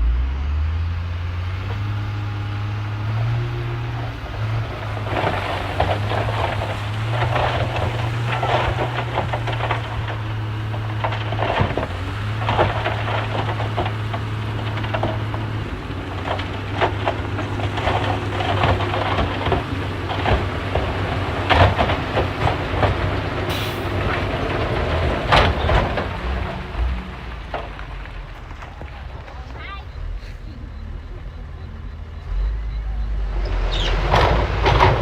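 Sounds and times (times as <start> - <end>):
bulldozer diesel engine running: 0.0 - 35.0
steel tracks clanking: 1.5 - 27.8, 28.4 - 35.0.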